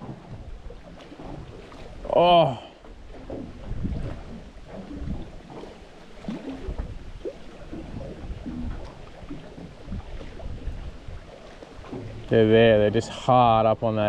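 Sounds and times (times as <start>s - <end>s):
boat bumps: 0.0s - 14.0s
rumble of wind and water: 0.0s - 14.0s.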